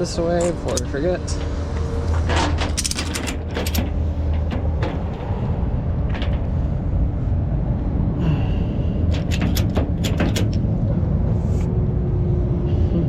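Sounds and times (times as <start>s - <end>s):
chains clanking and rattling: 0.1s - 1.6s, 2.2s - 6.8s, 9.1s - 10.7s.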